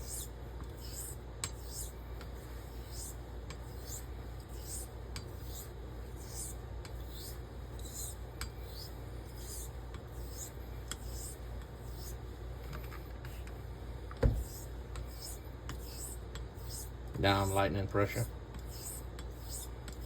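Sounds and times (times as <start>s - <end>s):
sharp thump: 14.2s - 14.5s.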